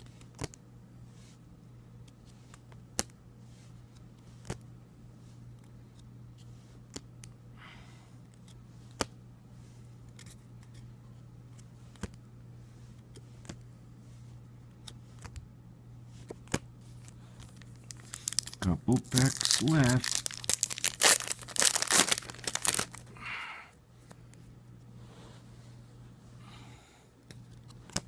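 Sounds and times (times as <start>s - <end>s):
steady low hum: 0.0s - 28.0s
trading cards clicking and snapping: 0.1s - 0.6s, 2.0s - 3.2s, 4.4s - 4.6s, 6.9s - 7.4s, 8.3s - 9.2s, 11.9s - 12.2s, 13.1s - 13.6s, 14.8s - 15.4s, 16.2s - 16.6s, 27.2s - 28.0s.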